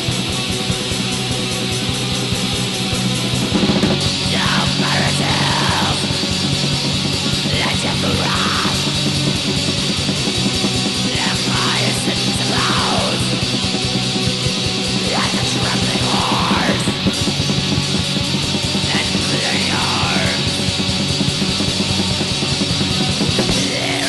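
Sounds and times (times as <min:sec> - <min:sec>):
distorted guitars: 0:00.0 - 0:24.0
drums: 0:00.0 - 0:24.0.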